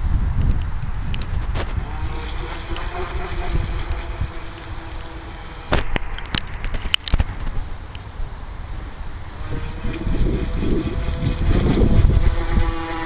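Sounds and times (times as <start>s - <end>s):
faint steady whine: 0.0s - 13.0s
wind buffeting microphone: 0.0s - 13.0s
sharp clicks and knocks: 3.8s - 8.0s.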